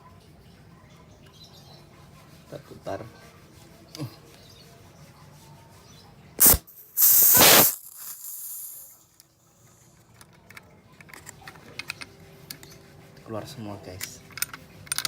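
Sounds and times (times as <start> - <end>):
gas hissing from pistol: 6.4 - 9.0.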